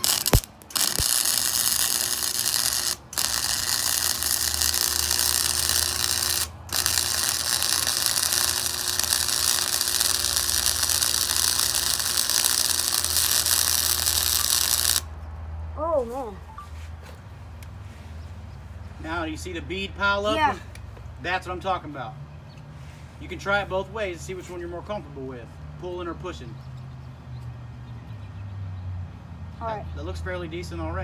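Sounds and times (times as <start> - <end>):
welder arc crackling: 0.0 - 15.2.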